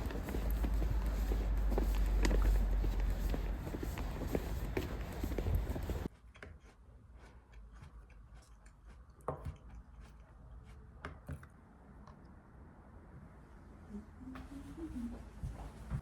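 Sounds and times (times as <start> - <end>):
footsteps: 0.0 - 6.1, 14.4 - 16.0.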